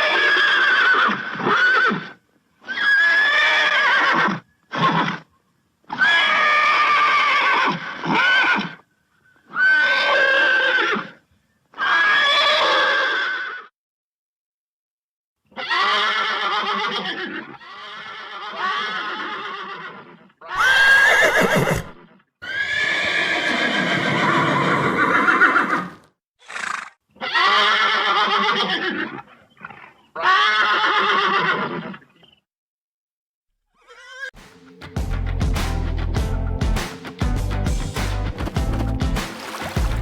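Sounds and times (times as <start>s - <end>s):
horse neighing: 15.6s - 29.2s, 30.2s - 32.0s.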